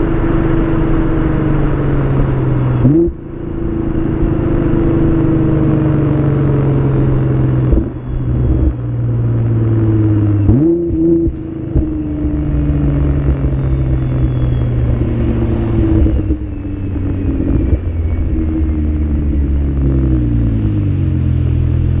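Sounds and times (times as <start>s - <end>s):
car engine revving: 0.0s - 22.0s.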